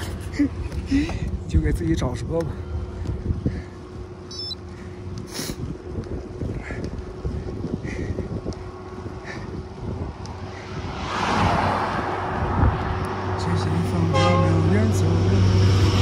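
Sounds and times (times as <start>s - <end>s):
wind rumbling on microphone: 0.0s - 16.0s
motor vehicle passing: 2.4s - 16.0s
high squeak from bike: 4.3s - 4.6s.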